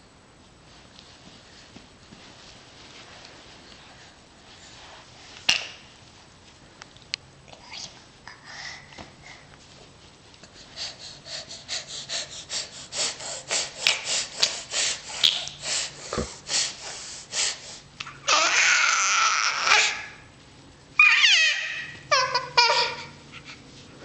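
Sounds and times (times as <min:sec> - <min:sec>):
rapid wheezy breaths: 0:08.3 - 0:09.8, 0:10.4 - 0:18.0.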